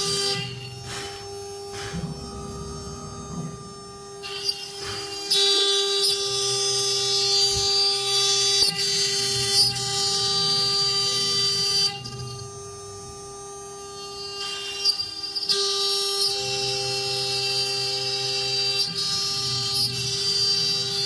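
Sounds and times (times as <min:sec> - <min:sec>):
router bits cutting board: 0:00.0 - 0:12.4
router spindles whining: 0:00.0 - 0:21.0.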